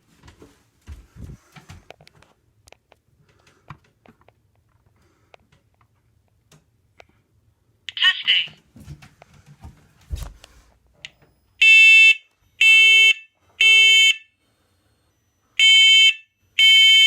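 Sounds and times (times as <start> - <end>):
smoke alarm beeps: 11.3 - 14.4, 15.1 - 17.0.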